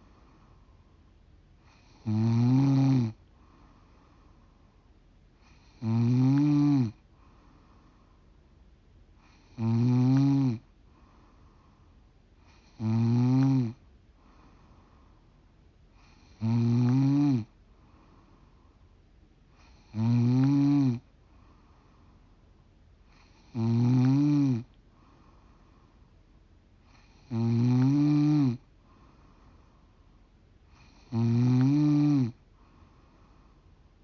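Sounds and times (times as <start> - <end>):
woman snoring: 1.6 - 3.2, 5.4 - 7.0, 9.2 - 10.6, 12.5 - 13.8, 16.0 - 17.5, 19.6 - 21.1, 23.1 - 24.7, 26.9 - 28.7, 30.7 - 32.4.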